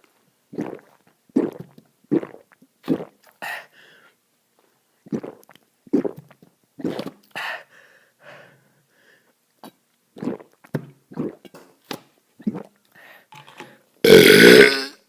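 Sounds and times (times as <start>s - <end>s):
person burping: 14.0s - 15.0s.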